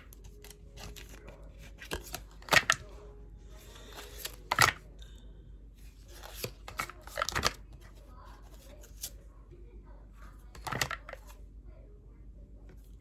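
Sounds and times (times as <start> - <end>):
card clicks: 0.0 - 3.0, 3.6 - 4.9, 6.0 - 9.2, 10.5 - 11.4
cards being handled: 0.0 - 3.0, 3.6 - 4.9, 5.8 - 9.2, 10.5 - 11.4.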